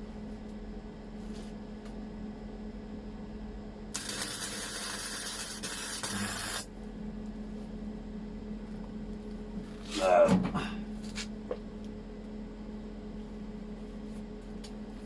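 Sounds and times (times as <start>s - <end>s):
steady hum: 0.0s - 15.0s
welding arc sizzling: 3.9s - 6.7s.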